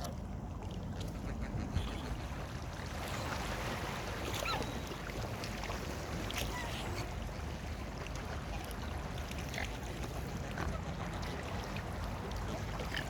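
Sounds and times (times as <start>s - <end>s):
faint waterfowl calls: 1.0s - 2.6s.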